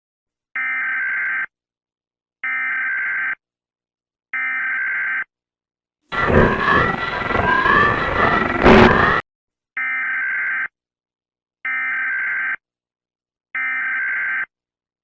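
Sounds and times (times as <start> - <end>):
data tone bursts: 6.1 - 9.2
loud noisy wavering sound: 6.1 - 9.2.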